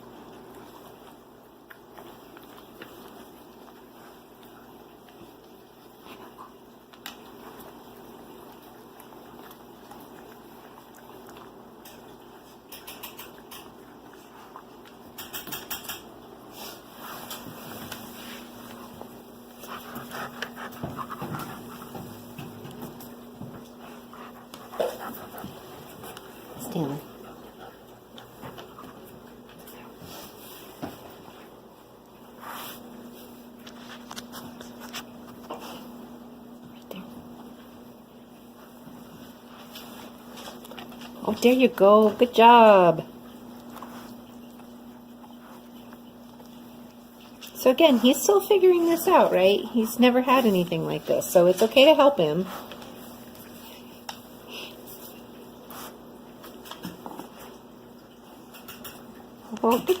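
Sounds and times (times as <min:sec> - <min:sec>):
faint steady hum: 0:00.0 - 1:00.0
dog rustling fabric mat: 0:16.5 - 0:36.1, 0:37.6 - 0:57.7.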